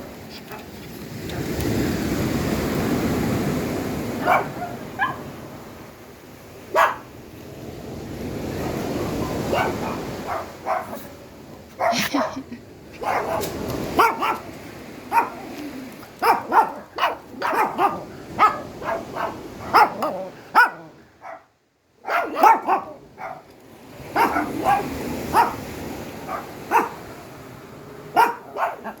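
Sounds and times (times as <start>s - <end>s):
dog barking: 4.2s - 5.3s, 6.7s - 7.1s, 9.0s - 12.4s, 13.0s - 14.5s, 15.1s - 15.5s, 16.2s - 23.5s, 24.1s - 27.1s, 28.1s - 29.0s.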